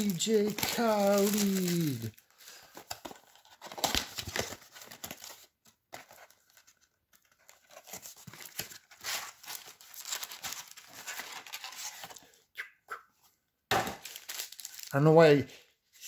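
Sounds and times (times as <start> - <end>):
foil wrapper tearing and crinkling: 0.0 - 5.4, 7.5 - 12.1, 14.0 - 15.0.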